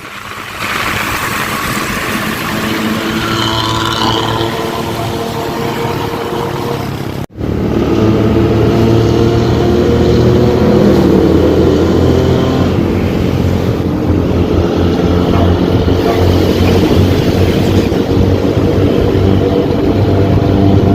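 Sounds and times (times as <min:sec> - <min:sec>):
bus diesel engine growling: 0:00.0 - 0:20.9.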